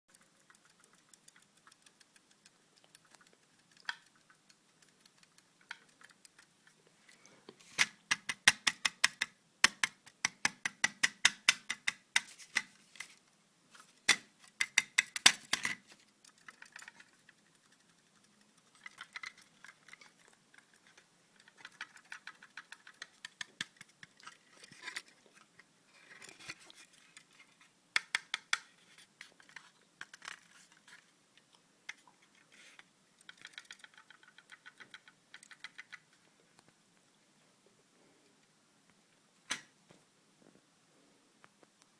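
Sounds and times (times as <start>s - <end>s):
drive rapid clicking and ticking: 0.1s - 6.6s.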